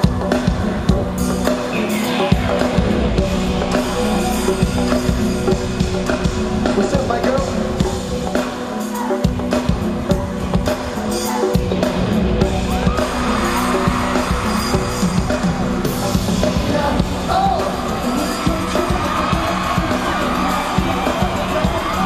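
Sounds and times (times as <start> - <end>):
crowd screaming and cheering: 0.0 - 22.0
live pop music: 0.0 - 22.0
person singing: 12.9 - 22.0.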